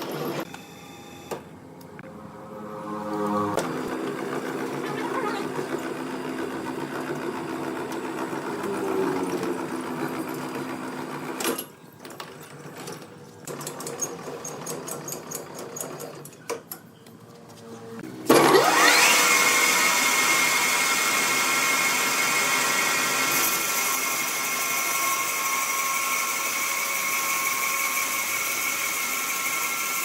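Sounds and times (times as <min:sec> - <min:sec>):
woodworking machinery humming: 0:01.6 - 0:11.6, 0:18.3 - 0:30.0.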